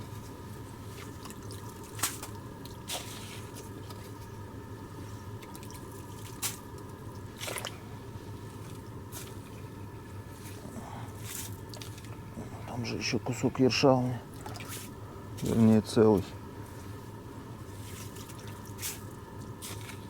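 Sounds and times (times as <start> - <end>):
faint steady hum: 0.0 - 20.0
slushy water drips and squelches: 0.9 - 4.2, 5.3 - 7.9, 11.2 - 12.2, 14.3 - 14.9, 18.0 - 20.0.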